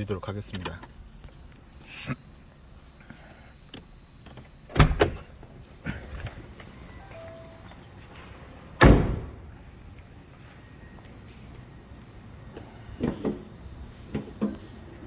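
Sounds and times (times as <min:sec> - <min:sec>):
car door clunking: 0:08.8 - 0:09.6
car door slamming: 0:08.8 - 0:09.6.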